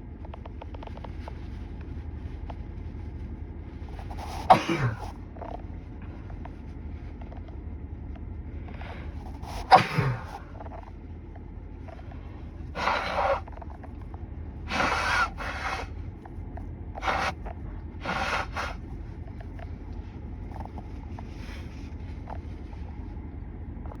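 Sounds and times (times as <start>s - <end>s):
car air conditioning hum: 0.0s - 24.0s
nasal sniffs and breaths: 3.9s - 5.2s, 8.8s - 10.8s, 11.9s - 13.8s, 14.7s - 16.0s, 17.0s - 19.6s, 20.5s - 23.0s.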